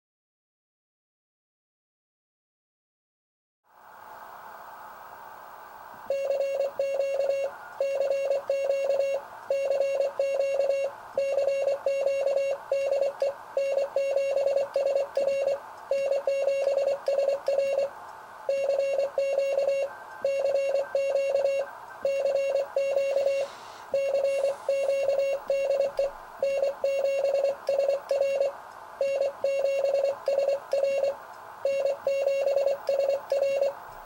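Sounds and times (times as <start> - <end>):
morse code beeps: 6.1 - 17.9, 18.5 - 33.8
radio hiss: 22.7 - 26.2.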